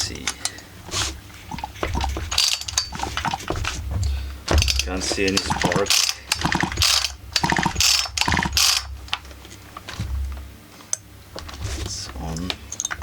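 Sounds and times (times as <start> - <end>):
chainsaw recoil starter ratcheting: 4.6 - 8.9.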